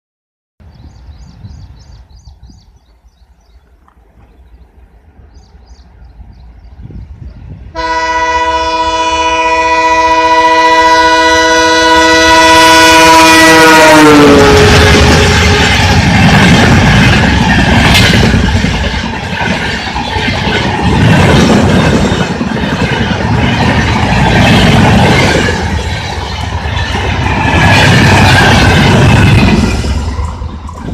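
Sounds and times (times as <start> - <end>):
locomotive rumble: 0.7 - 30.9
train roar: 2.8 - 30.9
train horn blast: 7.7 - 16.0.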